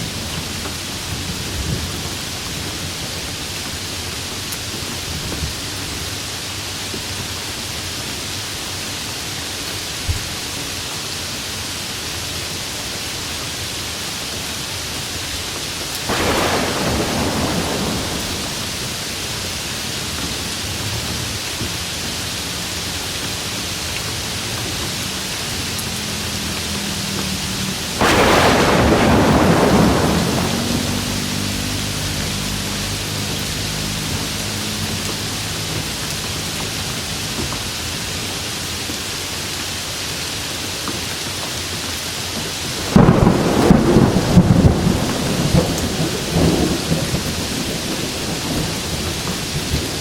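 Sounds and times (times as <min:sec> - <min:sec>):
steady rain falling: 0:00.0 - 0:50.0
thunder claps: 0:16.0 - 0:19.5, 0:27.6 - 0:32.3, 0:42.8 - 0:50.0.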